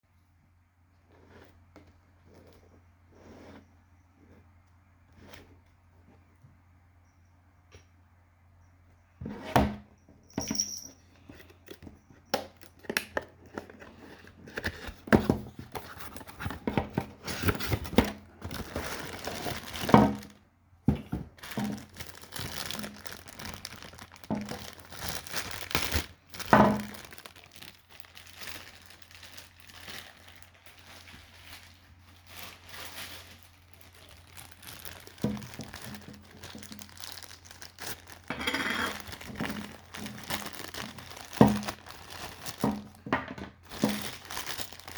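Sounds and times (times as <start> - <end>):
packaging crinkling and rustling: 11.4 - 20.4, 21.0 - 44.9
plastic packaging clicks and knocks: 14.5 - 31.2, 33.9 - 38.3, 38.9 - 44.9.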